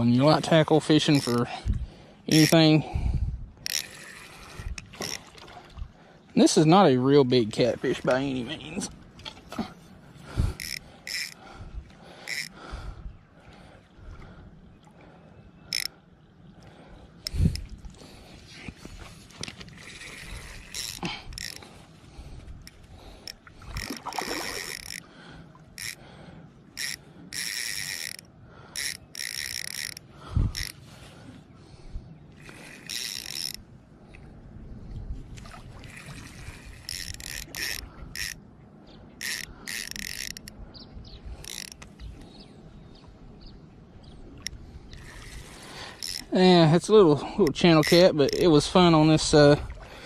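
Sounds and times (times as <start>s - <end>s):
fishing reel buzzing: 0.2s - 1.6s, 2.2s - 3.0s, 3.6s - 5.3s, 10.3s - 12.7s, 15.6s - 15.9s, 17.2s - 17.7s, 19.4s - 21.9s, 22.6s - 25.1s, 25.7s - 26.1s, 26.7s - 30.8s, 32.3s - 33.7s, 35.8s - 38.4s, 39.2s - 40.6s, 41.3s - 42.3s, 44.4s - 46.5s, 47.4s - 49.5s.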